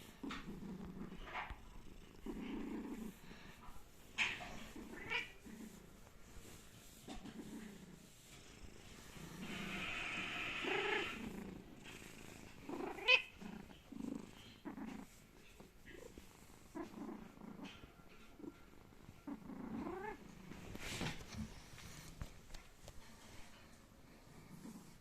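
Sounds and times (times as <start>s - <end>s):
cat snoring: 0.0s - 3.6s, 7.2s - 15.2s, 24.2s - 25.0s.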